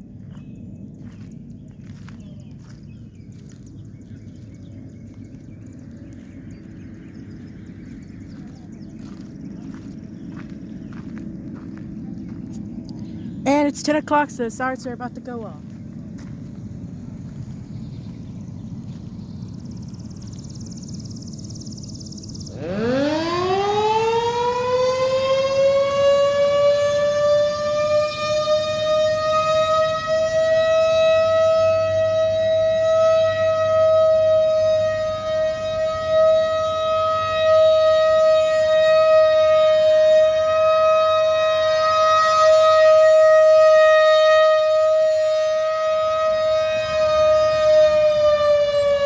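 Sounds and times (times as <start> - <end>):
small birds chirping: 0.0 - 25.1
distant train rumbling: 0.0 - 49.0
warning siren wailing: 1.8 - 49.0.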